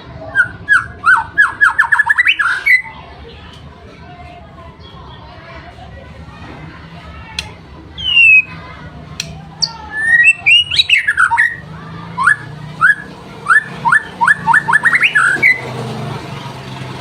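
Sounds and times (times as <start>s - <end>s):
bird singing whistled phrases: 8.0s - 8.6s, 9.6s - 11.6s, 12.2s - 15.6s.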